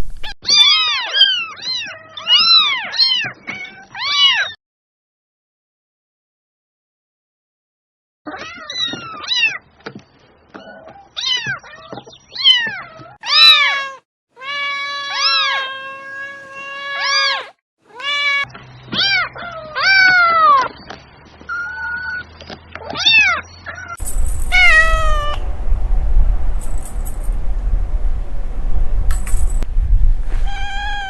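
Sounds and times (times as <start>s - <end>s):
cat meowing: 0.4s - 4.6s, 12.4s - 20.6s, 22.8s - 25.4s, 30.4s - 31.0s.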